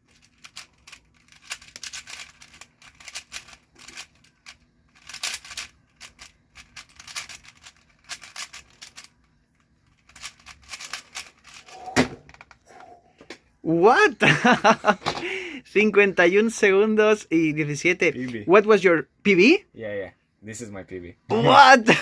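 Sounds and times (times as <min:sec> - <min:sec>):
plastic puzzle cube clicking: 0:00.2 - 0:09.2, 0:09.8 - 0:11.6.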